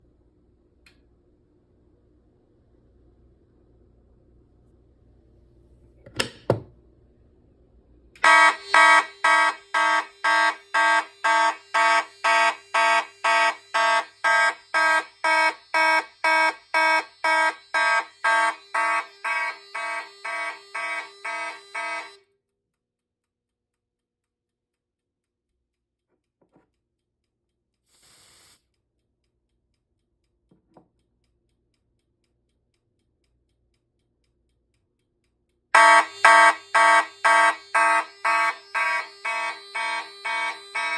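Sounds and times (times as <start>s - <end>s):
fire alarm horns pulsing: 8.2s - 22.3s, 35.8s - 40.9s
short hiss: 27.9s - 28.7s.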